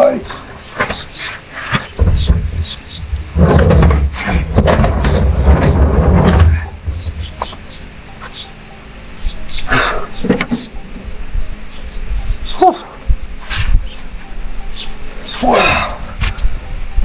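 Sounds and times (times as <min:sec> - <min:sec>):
birds chirping: 0:00.0 - 0:17.0
low rumbling handling noise: 0:00.3 - 0:08.5.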